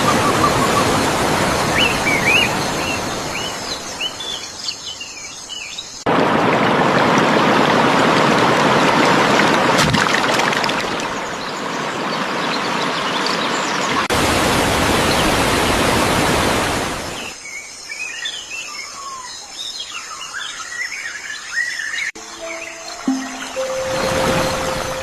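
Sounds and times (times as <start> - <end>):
rushing water: 0.0 - 4.7, 6.0 - 17.4, 22.2 - 25.0
birds chirping and trilling: 0.0 - 6.0, 17.1 - 25.0
steady musical tones: 22.2 - 25.0.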